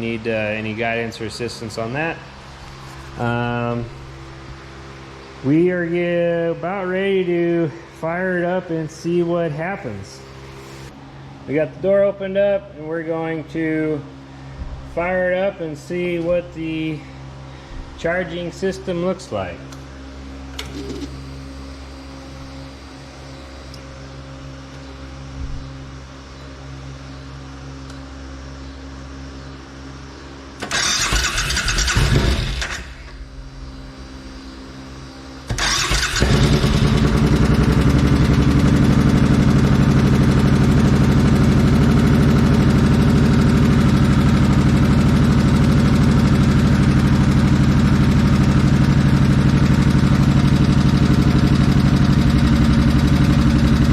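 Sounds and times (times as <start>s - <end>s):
motorcycle engine starting and idling: 0.0s - 4.9s, 19.7s - 25.7s, 30.6s - 53.9s
steady background hum: 0.0s - 40.0s.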